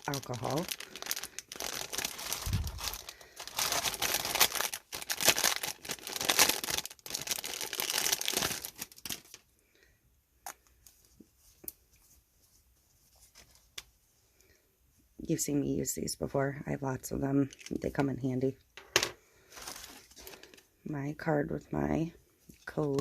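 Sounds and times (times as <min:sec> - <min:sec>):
packaging crinkling and tearing: 0:00.0 - 0:09.4, 0:19.6 - 0:20.6.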